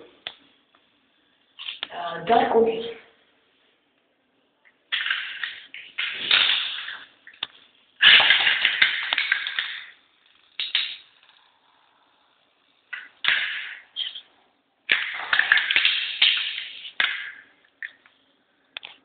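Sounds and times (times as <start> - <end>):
spinning tops clattering on plastic: 8.1 - 11.5, 14.9 - 17.5.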